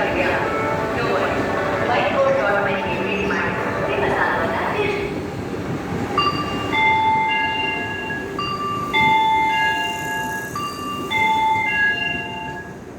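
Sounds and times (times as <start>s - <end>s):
train rumbling: 0.0s - 12.9s
chime tune over public address: 6.2s - 12.9s.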